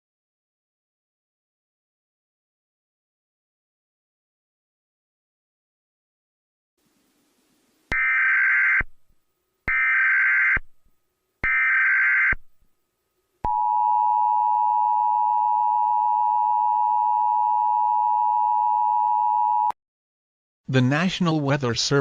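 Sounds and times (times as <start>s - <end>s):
long steady attention tone: 6.8s - 19.8s.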